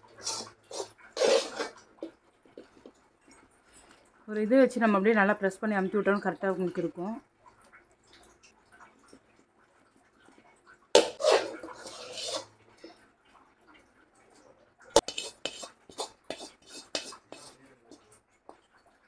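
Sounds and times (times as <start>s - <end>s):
metal spoon clattering on pan: 11.0s - 12.5s, 15.0s - 18.0s.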